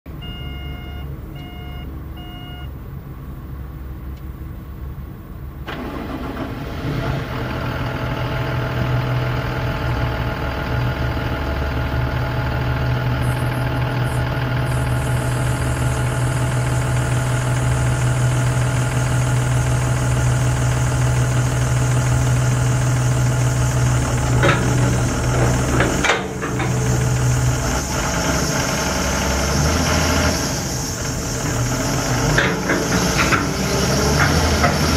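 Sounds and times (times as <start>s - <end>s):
short beeps: 0.1s - 2.8s, 13.2s - 18.1s
excavator diesel engine: 0.1s - 34.9s
high-pitched whine: 13.0s - 33.4s
machine clunks: 22.6s - 28.6s, 32.3s - 34.9s.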